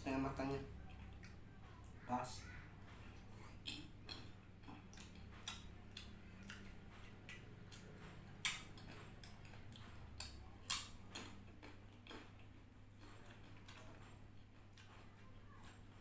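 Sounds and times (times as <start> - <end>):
wet mouth clicks while chewing: 3.4 - 14.0.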